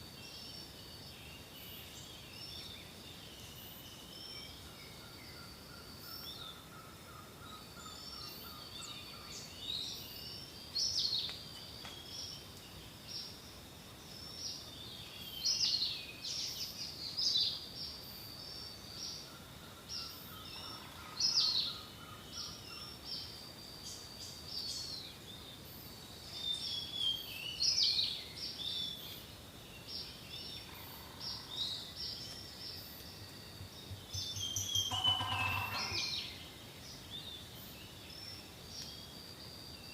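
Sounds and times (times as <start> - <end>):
songbirds chirping and whistling: 0.1 - 39.9
faint steady high tone: 32.2 - 36.4.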